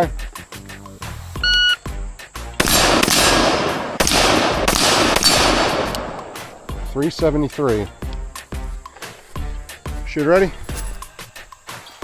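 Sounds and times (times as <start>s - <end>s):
shot timer beep: 1.4s - 1.8s
gunshots: 2.6s - 6.8s.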